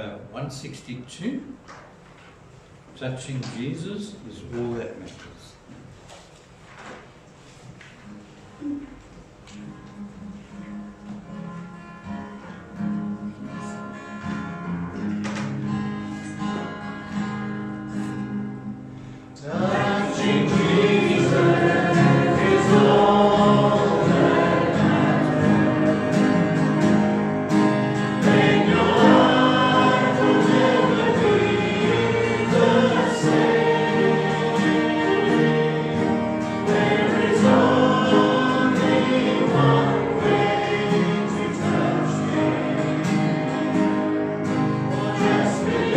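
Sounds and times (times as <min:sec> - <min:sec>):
congregation singing a hymn: 0:19.4 - 0:45.9
instrumental accompaniment: 0:19.6 - 0:45.9.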